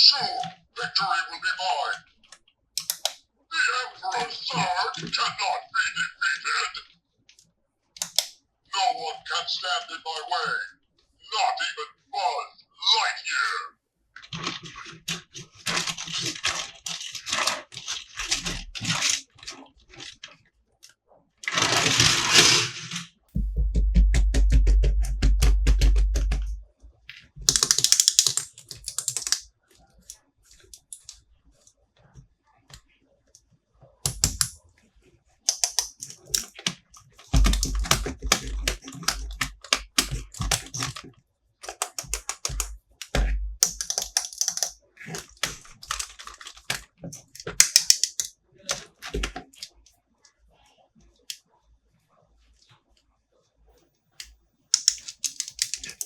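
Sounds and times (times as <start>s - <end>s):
plastic toys clicking and tapping: 2.2s - 3.2s, 7.3s - 8.4s, 14.2s - 23.0s, 25.5s - 31.2s, 34.0s - 34.6s, 35.4s - 49.9s, 54.2s - 56.0s.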